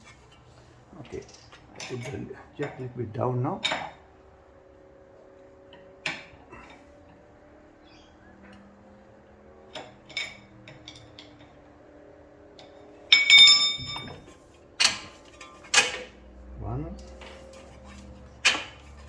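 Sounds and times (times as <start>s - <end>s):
metal tools clinking: 0.1s - 4.1s, 9.6s - 11.7s, 12.6s - 19.0s
loud metallic clank: 13.2s - 16.2s.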